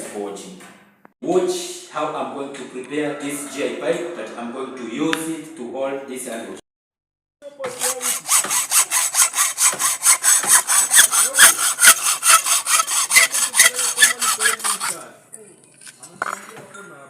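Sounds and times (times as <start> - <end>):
hacksaw cutting metal pipe: 7.6 - 15.0.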